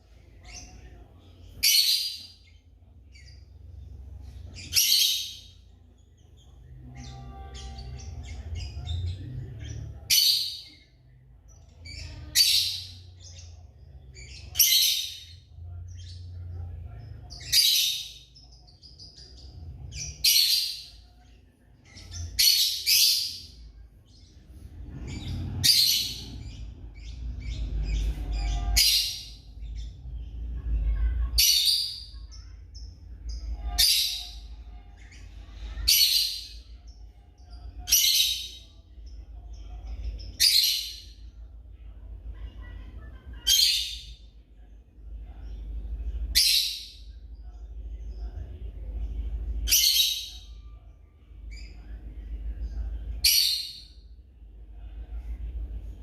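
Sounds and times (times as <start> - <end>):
low rumble: 23.5 - 31.4.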